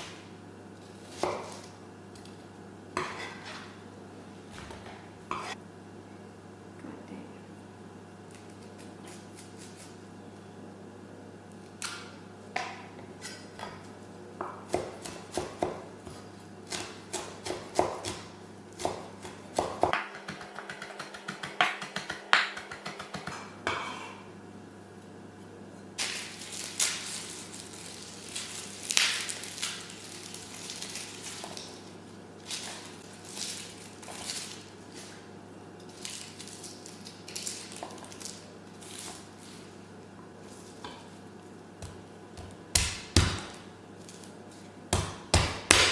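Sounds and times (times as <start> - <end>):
low steady hum: 23.2 - 45.9.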